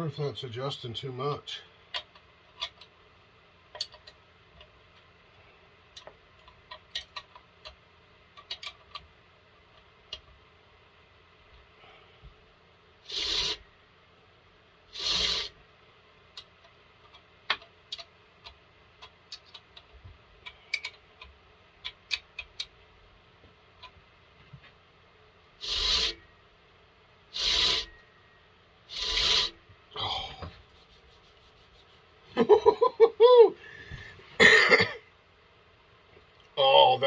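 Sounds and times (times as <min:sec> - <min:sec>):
file scraping chainsaw chain: 0:27.4 - 0:27.9, 0:28.9 - 0:29.5.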